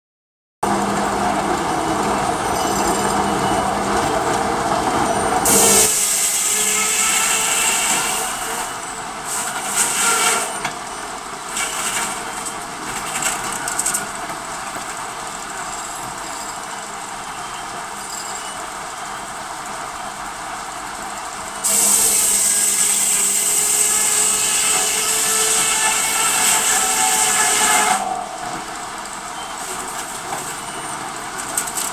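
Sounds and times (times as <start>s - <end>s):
sawmill machinery noise: 0.6s - 31.9s
saw cutting through wood: 5.4s - 10.6s, 11.5s - 12.4s, 21.6s - 28.4s.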